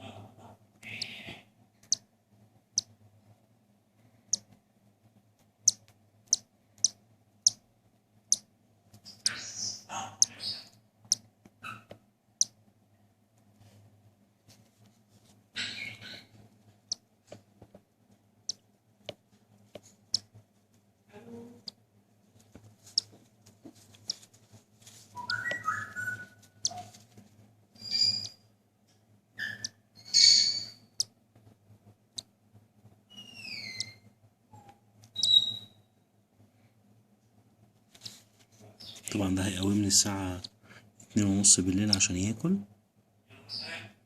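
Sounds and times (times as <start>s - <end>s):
chicks begging cheeps: 25.2s - 27.0s.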